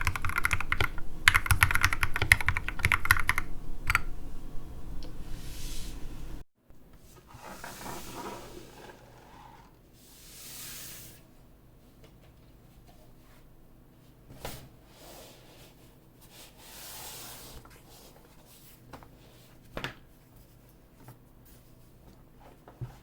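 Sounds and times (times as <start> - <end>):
keyboard keystrokes: 0.0 - 4.1.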